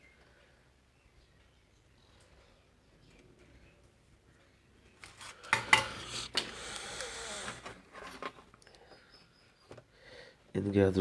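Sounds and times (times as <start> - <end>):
rubbing and scraping: 5.0 - 8.6
metal tools clinking on workbench: 5.1 - 6.5.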